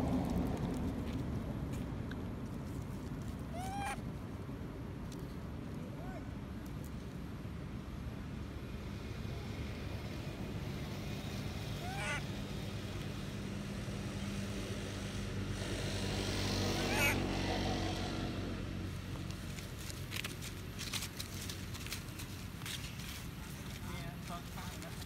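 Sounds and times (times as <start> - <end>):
vehicle engine passing: 8.8 - 20.0.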